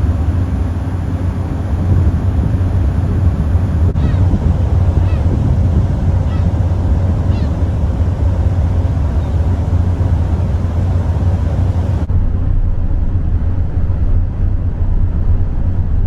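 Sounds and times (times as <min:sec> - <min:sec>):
rushing water and wind: 0:00.0 - 0:12.1
ship engine rumble: 0:00.0 - 0:12.1.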